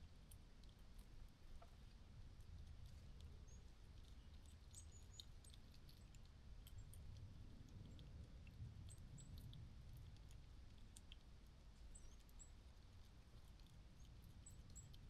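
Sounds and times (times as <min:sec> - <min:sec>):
soft high ticks: 0:04.0 - 0:12.5.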